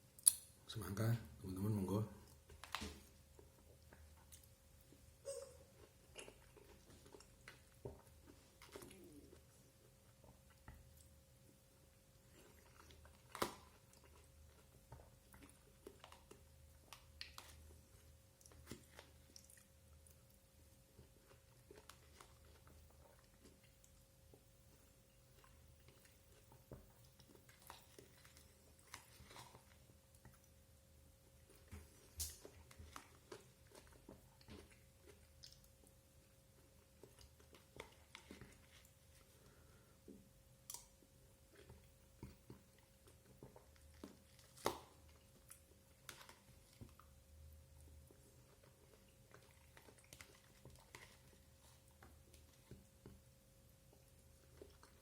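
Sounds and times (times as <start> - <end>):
faint steady hum: 0.0 - 55.0
wet mouth clicks and smacks: 0.2 - 0.5
faint chewing: 2.1 - 55.0.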